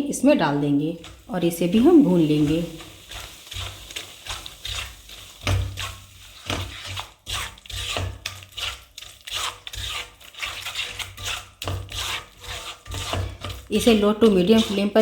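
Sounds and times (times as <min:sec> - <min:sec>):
spatula scraping flour in a pan: 0:01.0 - 0:15.0.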